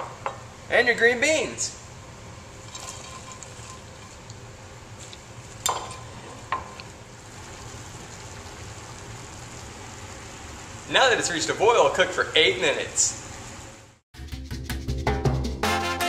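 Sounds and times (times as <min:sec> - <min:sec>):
curry sizzling and bubbling in pot: 0:01.8 - 0:14.0
utensil clinking against pot: 0:02.6 - 0:04.4.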